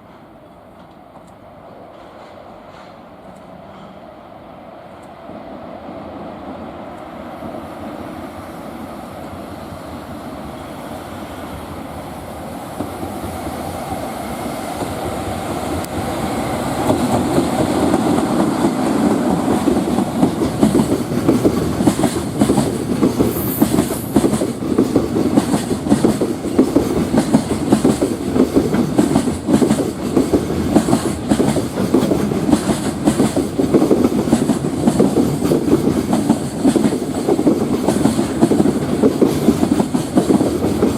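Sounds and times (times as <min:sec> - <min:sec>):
freight train passing: 0:00.0 - 0:40.9.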